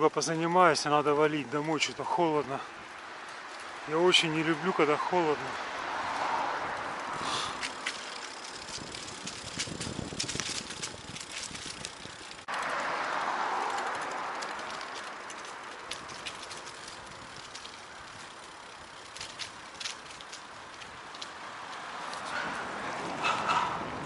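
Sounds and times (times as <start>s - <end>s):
vehicle passing: 1.4s - 24.0s
light clicks and ticks: 13.7s - 22.2s.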